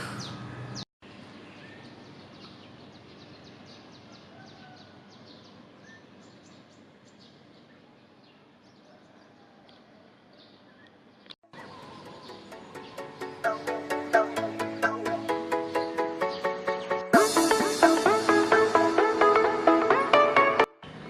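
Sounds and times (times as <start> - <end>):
birds chirping: 0.0 - 21.0.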